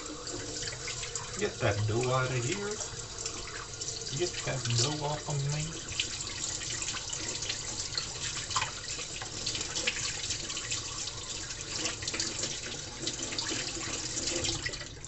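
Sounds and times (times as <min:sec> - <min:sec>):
tap running into sink: 0:11.7 - 0:14.9.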